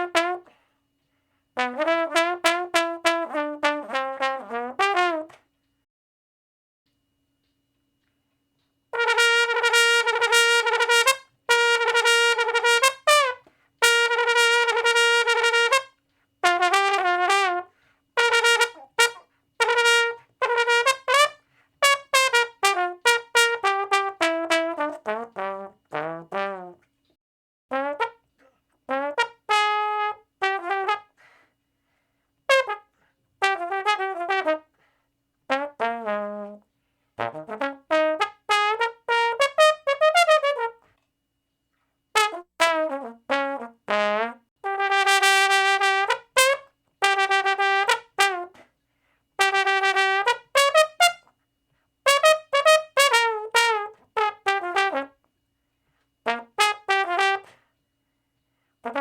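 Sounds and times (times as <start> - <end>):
brass instrument playing short notes: 0.0 - 0.6, 9.0 - 26.9, 37.2 - 40.9, 52.1 - 55.1.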